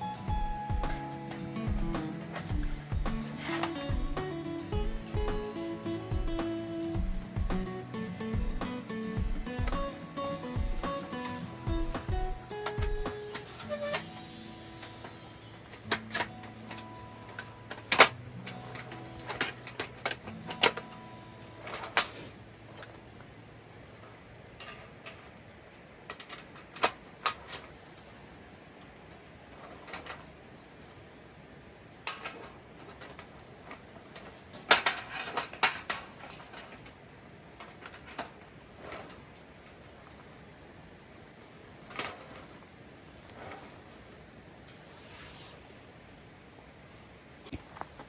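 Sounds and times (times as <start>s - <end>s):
objects clattering and knocking: 0.0s - 7.7s, 8.3s - 23.3s, 23.9s - 30.5s, 32.1s - 40.5s, 41.6s - 44.2s
background music: 0.0s - 22.1s.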